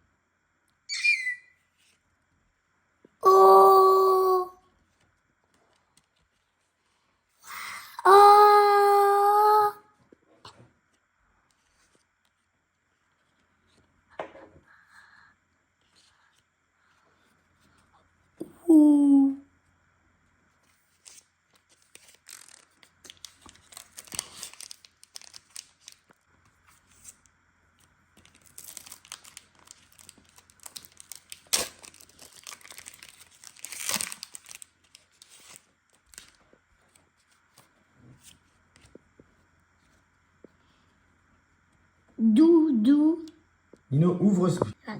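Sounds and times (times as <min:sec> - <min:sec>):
foil wrappers tearing and crinkling: 0:21.0 - 0:26.2, 0:28.2 - 0:36.4.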